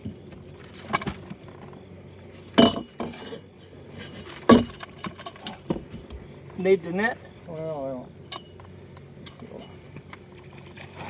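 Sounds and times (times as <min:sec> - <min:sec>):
sharp clinking knocks: 0:02.5 - 0:03.3.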